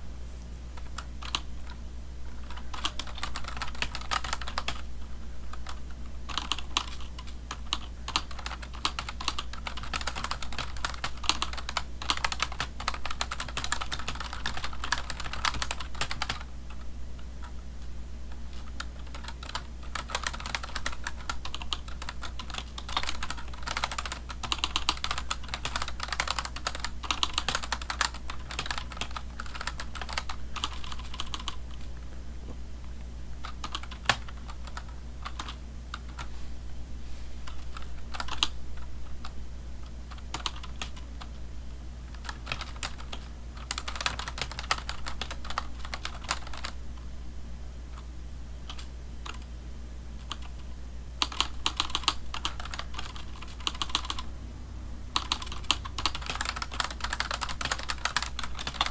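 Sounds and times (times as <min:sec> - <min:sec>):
low hum: 0:53.2 - 0:56.3.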